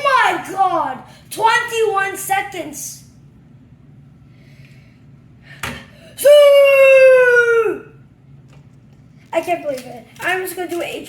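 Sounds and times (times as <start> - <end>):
child screaming with excitement: 6.2 - 8.0.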